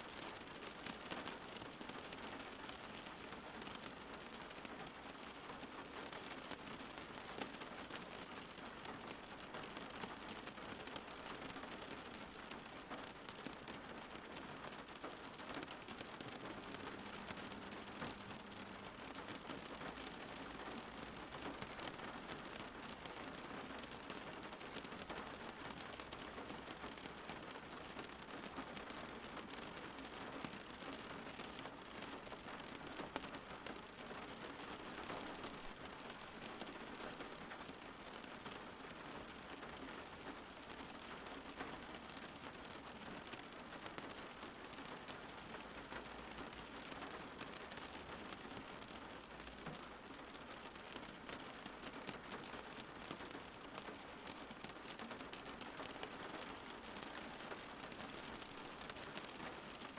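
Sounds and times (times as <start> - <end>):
steady rain patter: 0.0 - 59.9.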